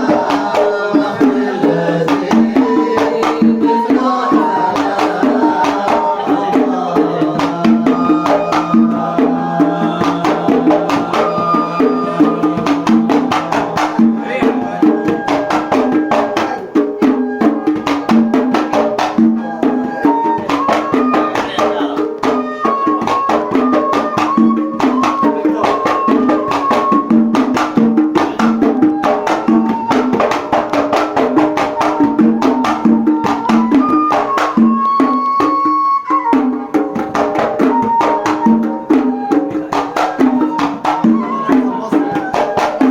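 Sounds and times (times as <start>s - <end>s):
fast hand percussion rhythm: 0.0s - 42.9s.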